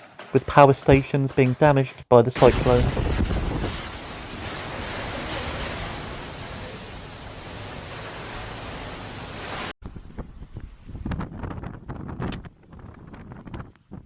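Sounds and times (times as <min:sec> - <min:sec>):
wind buffeting microphone: 0:02.4 - 0:08.7, 0:09.9 - 0:14.0
wind and rain: 0:02.4 - 0:14.0.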